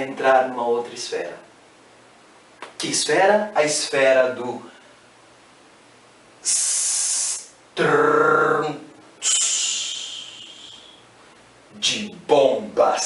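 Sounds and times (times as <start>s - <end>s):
man making hissing s sound: 6.4s - 8.1s, 9.2s - 11.0s.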